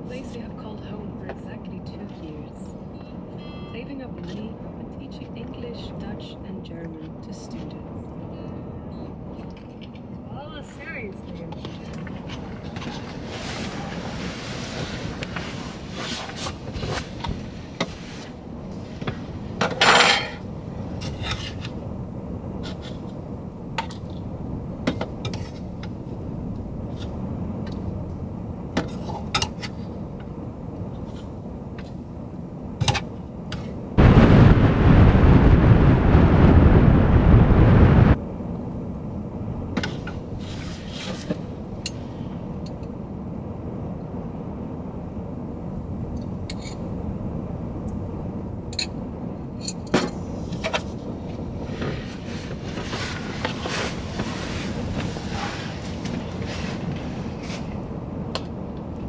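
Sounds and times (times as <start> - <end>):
dishes and cutlery clinking: 19.0 - 21.7
loud rushing noise: 34.0 - 38.2.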